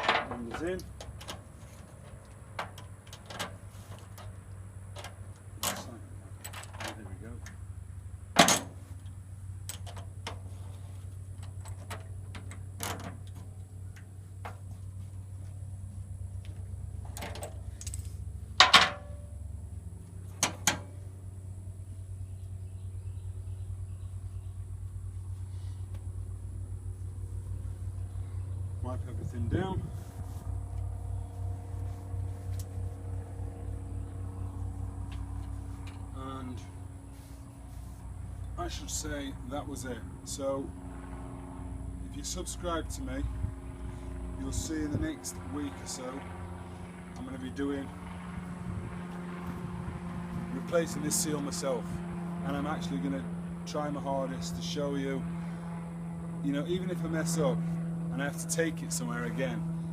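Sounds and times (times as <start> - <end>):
steady low hum: 0.0 - 59.9
clicks and knocks of tools handled: 16.4 - 19.0.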